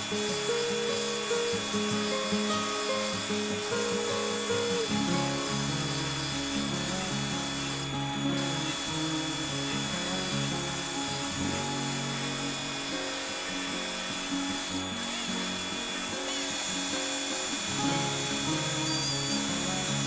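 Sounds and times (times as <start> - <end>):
background music: 0.0 - 20.0
power sander rubbing: 0.0 - 20.0.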